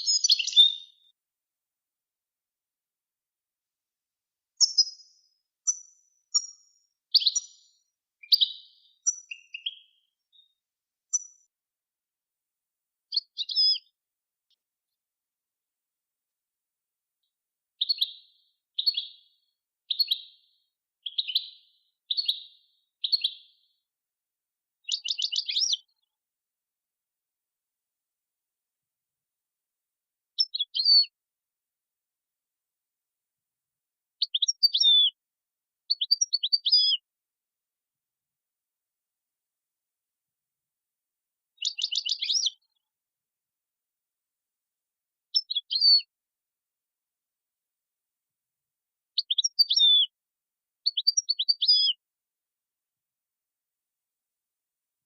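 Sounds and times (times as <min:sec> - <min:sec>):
songbird chirping and trilling: 0:00.0 - 0:01.1, 0:04.6 - 0:11.4, 0:13.1 - 0:14.0, 0:17.8 - 0:23.8, 0:24.8 - 0:26.1, 0:30.4 - 0:31.2, 0:34.2 - 0:35.2, 0:35.9 - 0:37.0, 0:41.6 - 0:42.8, 0:45.3 - 0:46.1, 0:49.2 - 0:50.2, 0:50.8 - 0:52.0.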